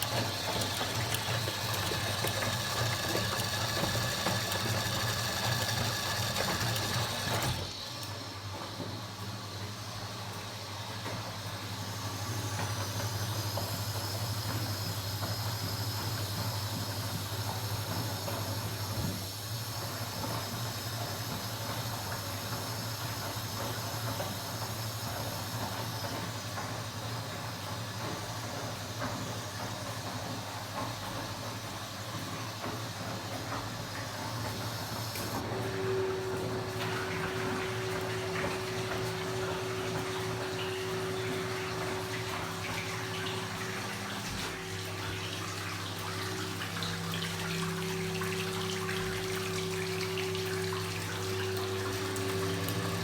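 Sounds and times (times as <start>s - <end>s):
hissing watery wash: 0.0s - 7.7s, 34.0s - 53.0s
second steady hum: 0.0s - 7.7s
washing machine hum: 0.0s - 53.0s.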